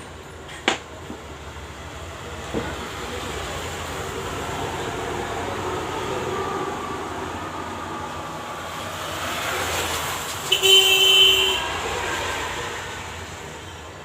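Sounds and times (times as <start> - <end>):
traffic noise: 0.0 - 14.0
horn honking: 10.4 - 12.3.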